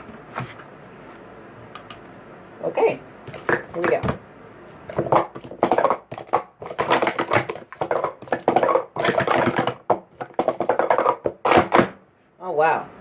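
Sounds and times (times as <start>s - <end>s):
plastic cups clacking: 3.3s - 4.2s, 4.9s - 12.0s.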